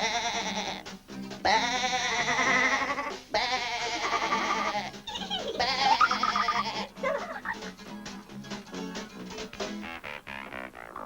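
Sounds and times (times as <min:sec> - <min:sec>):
cartoon sheep bleating: 0:00.0 - 0:05.0, 0:05.6 - 0:07.6
light background music: 0:00.0 - 0:11.0.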